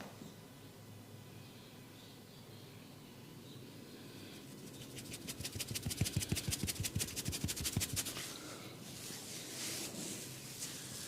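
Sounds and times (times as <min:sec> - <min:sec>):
rubbing and scratching hair: 0:04.5 - 0:08.3, 0:08.9 - 0:11.0
hands patting head: 0:04.8 - 0:08.3.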